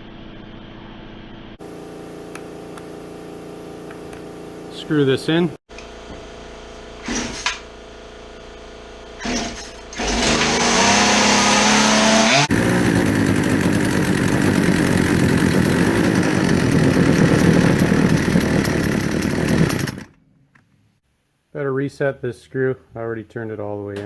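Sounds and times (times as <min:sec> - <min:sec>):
chainsaw engine revving: 0:01.6 - 0:05.6, 0:09.2 - 0:20.2.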